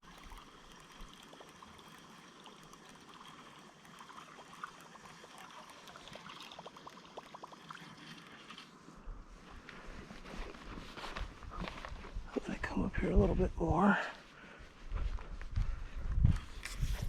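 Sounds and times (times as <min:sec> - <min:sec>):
river water trickling: 0:00.0 - 0:09.8.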